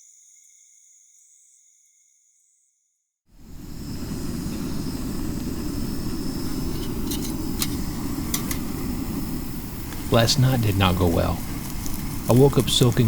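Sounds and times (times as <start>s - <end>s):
river cascades roaring: 3.4s - 13.0s.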